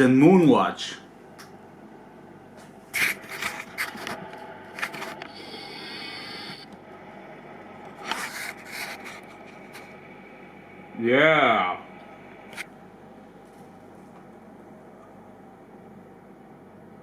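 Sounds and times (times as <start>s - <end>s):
rubbing hiss: 5.2s - 6.6s.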